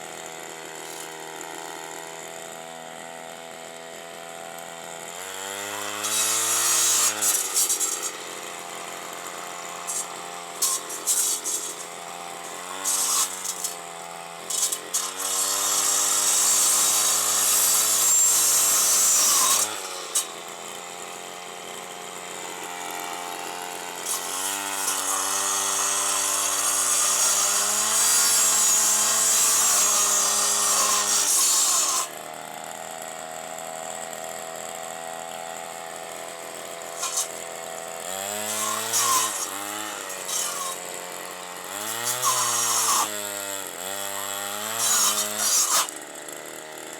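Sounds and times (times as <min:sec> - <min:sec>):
brushcutter revving: 0:00.0 - 0:46.9
blade cutting thorny branches: 0:05.7 - 0:20.5, 0:24.0 - 0:32.1, 0:36.9 - 0:46.1.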